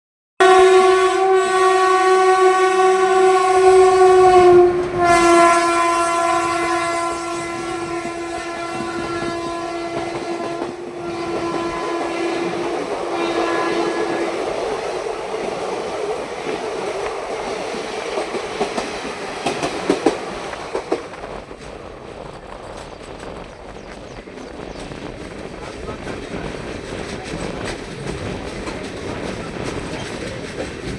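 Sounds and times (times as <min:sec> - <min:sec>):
train horn: 0:00.4 - 0:15.7
train wheels clickety-clack: 0:04.2 - 0:30.9.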